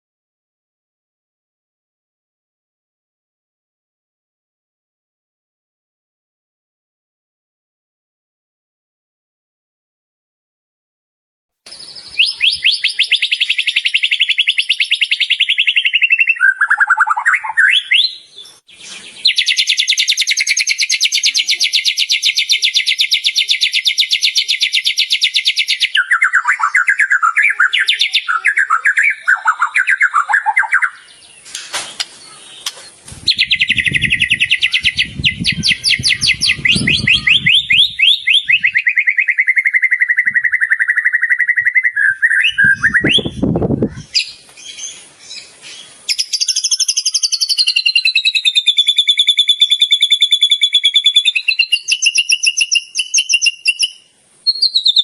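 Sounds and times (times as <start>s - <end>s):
songbird trilling and warbling: 11.7s - 55.0s.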